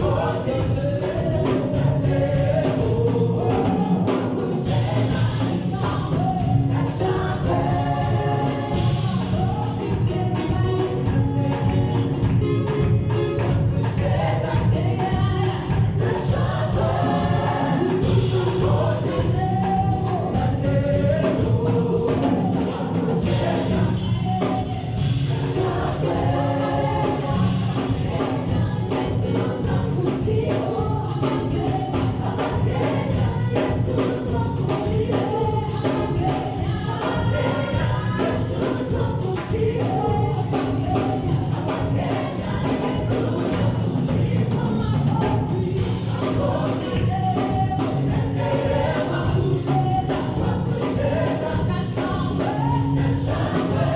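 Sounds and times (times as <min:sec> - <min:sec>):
group of voices singing: 0:00.0 - 0:53.9
band playing: 0:06.2 - 0:28.8.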